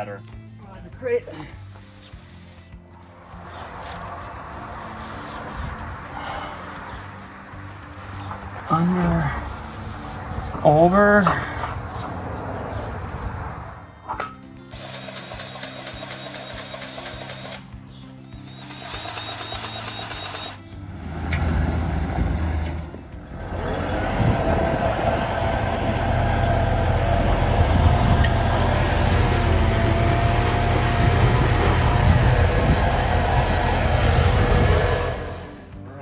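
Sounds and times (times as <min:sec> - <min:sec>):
tractor engine running: 0:01.0 - 0:35.8.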